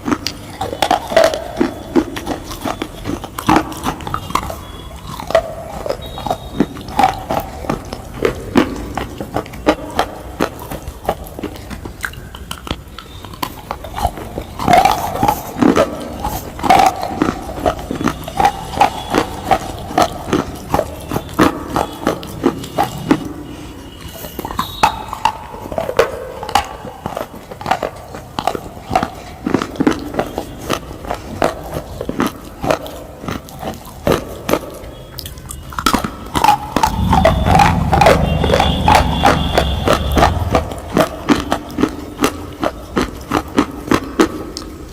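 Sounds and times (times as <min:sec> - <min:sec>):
crunching and chewing: 0:00.0 - 0:44.9
low rumble: 0:36.6 - 0:42.2.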